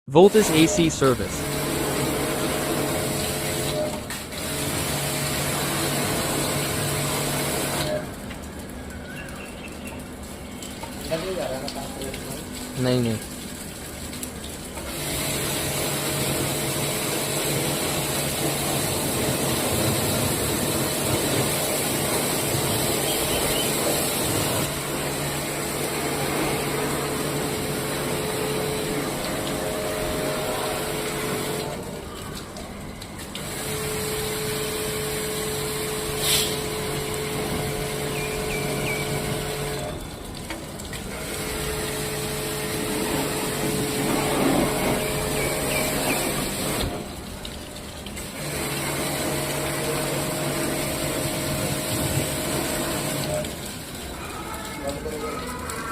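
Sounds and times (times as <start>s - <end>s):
pressure washer spraying hiss: 36.2s - 36.7s.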